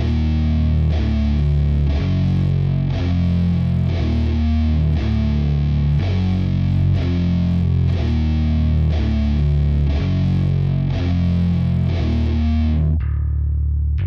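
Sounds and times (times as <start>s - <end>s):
rock music with distorted guitar: 0.0s - 13.4s.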